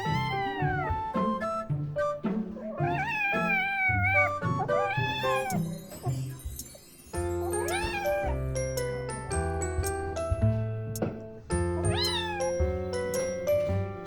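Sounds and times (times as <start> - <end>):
cat meowing: 0.0 - 1.0, 2.6 - 5.7, 7.4 - 8.5, 11.8 - 12.7
background music: 0.0 - 14.0.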